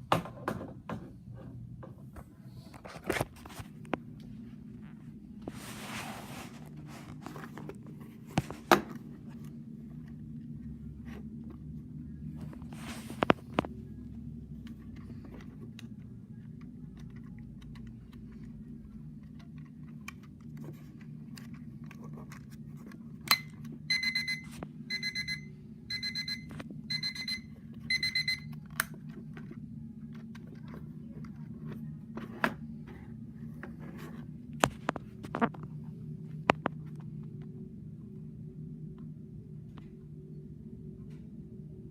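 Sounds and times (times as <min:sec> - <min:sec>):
steady low hum: 0:00.0 - 0:41.9
alarm clock beeping: 0:23.9 - 0:28.6.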